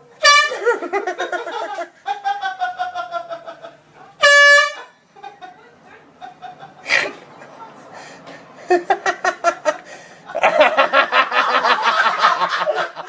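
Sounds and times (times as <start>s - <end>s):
air horn blasts: 0.2s - 0.8s, 4.2s - 4.9s.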